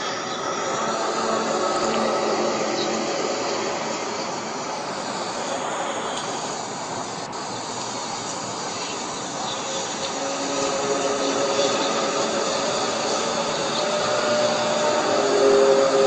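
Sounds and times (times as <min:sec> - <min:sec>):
loud rushing noise: 0:00.0 - 0:16.0.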